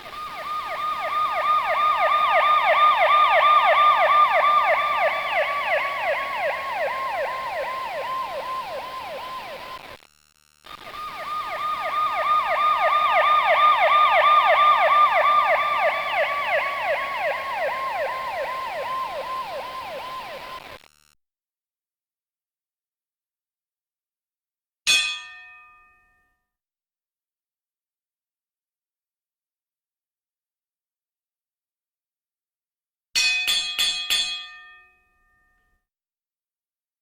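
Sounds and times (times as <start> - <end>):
siren in fast yelp: 0.0 - 9.9, 10.8 - 20.8.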